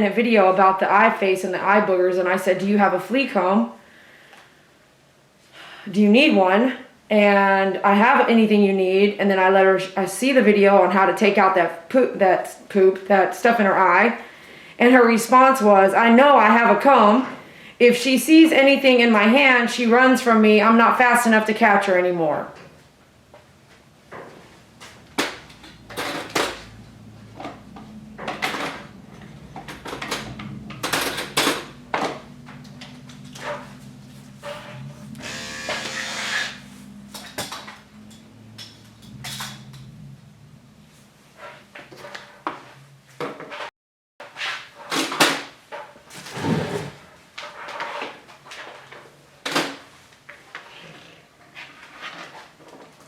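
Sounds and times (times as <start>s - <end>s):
handling knocks and clicks: 24.1s - 33.8s.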